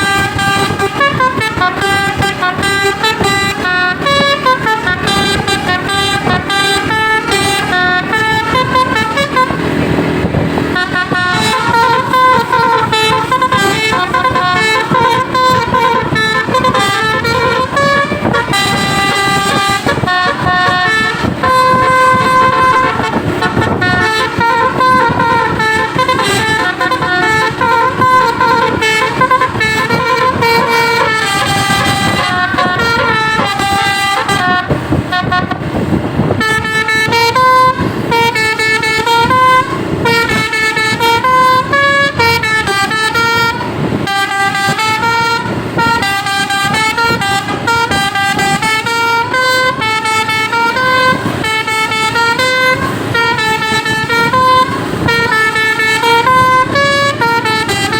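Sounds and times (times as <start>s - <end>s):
bus engines rumbling: 0.0s - 57.9s
musical bus horns playing melodies: 0.0s - 57.9s.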